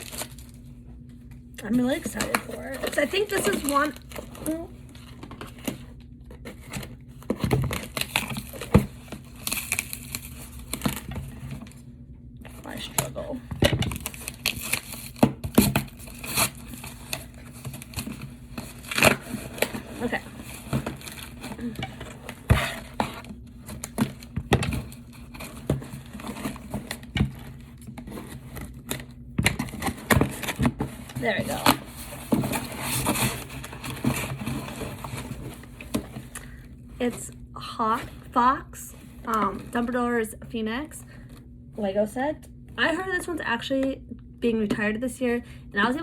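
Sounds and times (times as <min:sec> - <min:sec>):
packaging crinkling and rustling: 0:00.0 - 0:11.9, 0:12.5 - 0:37.3.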